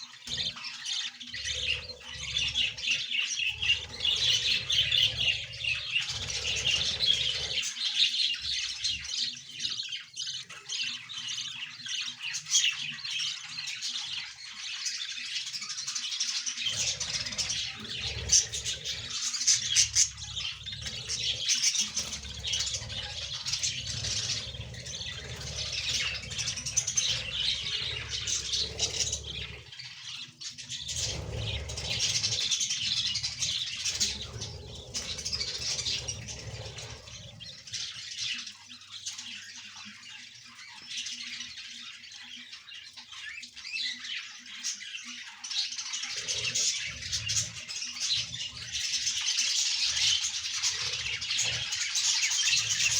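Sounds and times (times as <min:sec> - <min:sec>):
budgerigars chirping and squawking: 0:00.0 - 0:52.9.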